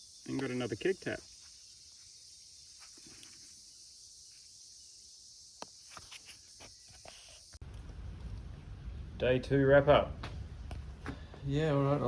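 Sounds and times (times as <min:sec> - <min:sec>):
high-pitched insect chorus: 0:00.0 - 0:07.6.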